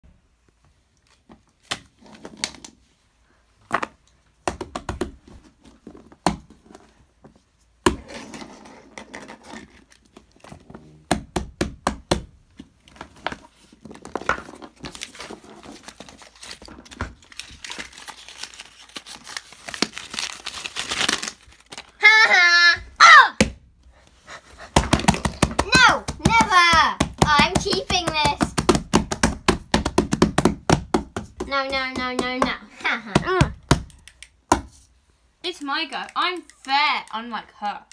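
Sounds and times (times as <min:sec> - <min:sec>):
rustling: 0:12.6 - 0:22.0.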